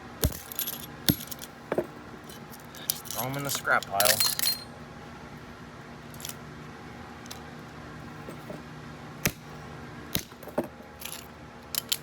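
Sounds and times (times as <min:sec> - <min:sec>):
steady low hum: 0:00.0 - 0:12.0
metal pieces clinking: 0:00.2 - 0:04.7, 0:10.4 - 0:12.0.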